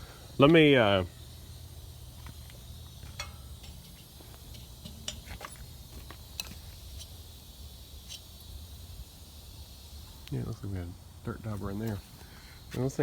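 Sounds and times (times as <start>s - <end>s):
steady low hum: 0.0s - 13.0s
metal shroud clicking and tapping: 2.2s - 6.6s.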